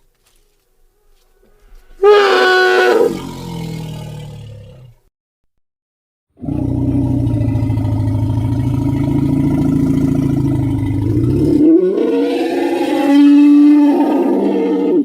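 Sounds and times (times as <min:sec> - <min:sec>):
elephant roaring: 0:02.0 - 0:05.0, 0:06.4 - 0:15.0.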